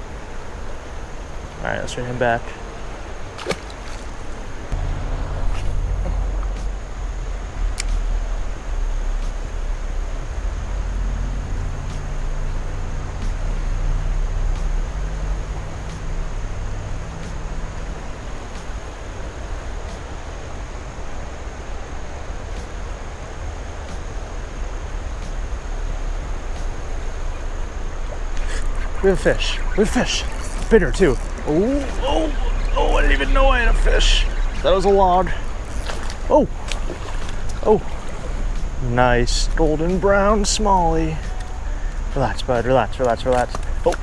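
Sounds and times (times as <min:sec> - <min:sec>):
wind buffeting microphone: 0:14.4 - 0:44.0
faint clicks: 0:26.5 - 0:38.8, 0:39.5 - 0:44.0.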